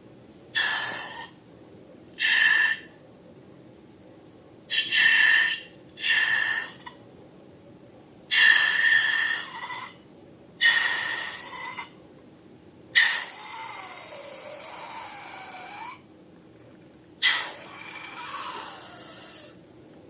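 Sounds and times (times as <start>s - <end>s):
air squealing out of balloon: 17.2s - 19.6s.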